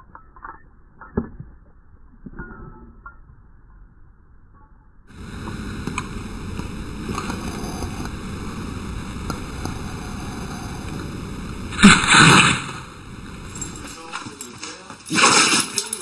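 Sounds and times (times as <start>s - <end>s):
background rushing noise: 5.1s - 16.0s.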